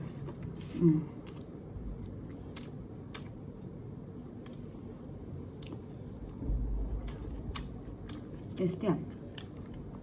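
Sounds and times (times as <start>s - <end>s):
person chewing food: 0.0s - 10.0s
low bump: 6.4s - 7.4s.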